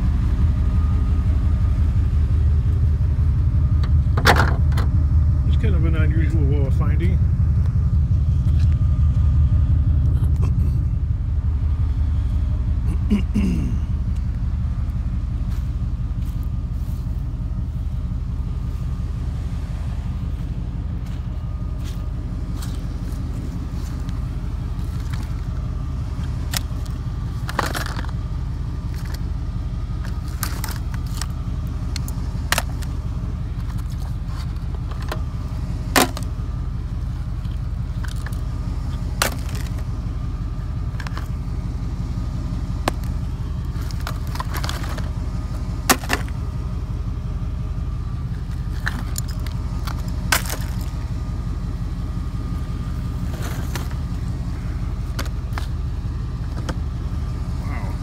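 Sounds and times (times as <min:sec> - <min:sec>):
low engine hum: 0:00.0 - 0:58.0.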